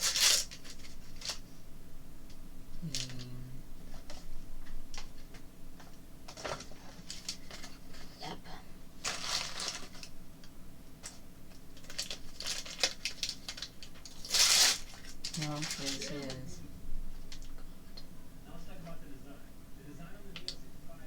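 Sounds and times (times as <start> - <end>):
packaging crinkling: 0.0 - 1.5, 6.3 - 8.1, 9.0 - 10.2, 11.0 - 16.4.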